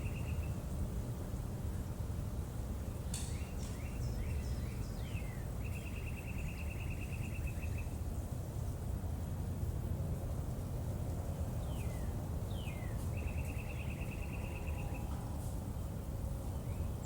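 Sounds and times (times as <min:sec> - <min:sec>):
bird chirping and trilling: 0:11.6 - 0:15.1.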